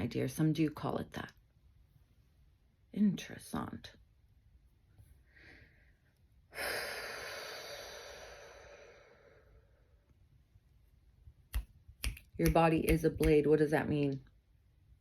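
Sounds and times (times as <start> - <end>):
person sighing: 6.5 - 9.4.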